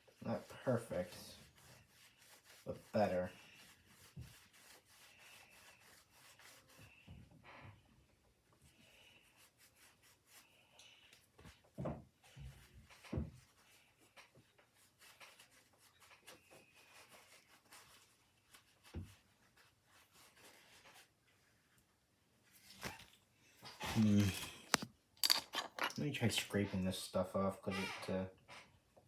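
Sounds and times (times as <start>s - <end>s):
rubbing on plastic case: 23.7s - 24.9s.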